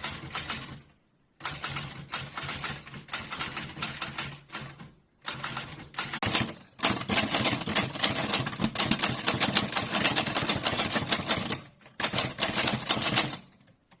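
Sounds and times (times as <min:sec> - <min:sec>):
typewriter keys striking: 0:01.4 - 0:14.0
typewriter bell ding: 0:11.1 - 0:13.4.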